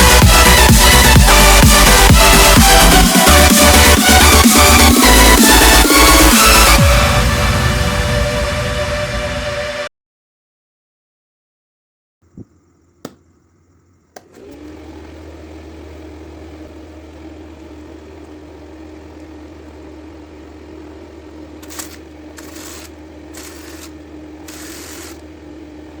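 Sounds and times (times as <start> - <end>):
small motor fan humming: 0.0 - 7.5, 12.2 - 26.0
clicks: 14.1 - 14.7.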